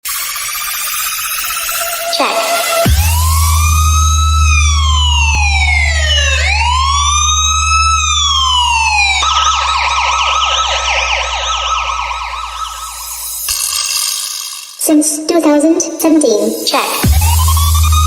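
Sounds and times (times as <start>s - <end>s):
electronic police siren: 0.0s - 14.8s, 16.8s - 18.0s
deep bass hum: 2.8s - 13.4s, 17.0s - 18.0s.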